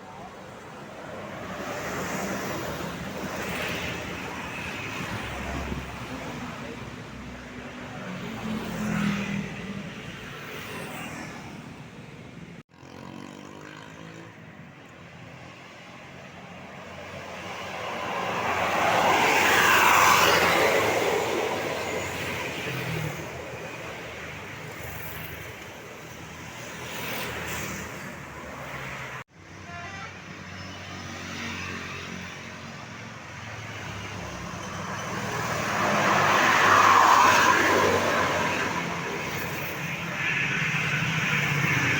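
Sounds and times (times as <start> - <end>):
vehicles driving past: 0.0 - 29.6, 30.2 - 41.9.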